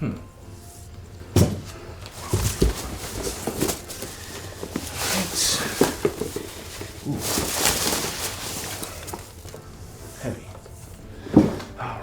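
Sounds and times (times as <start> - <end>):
rustle or scrape: 2.1 - 9.5.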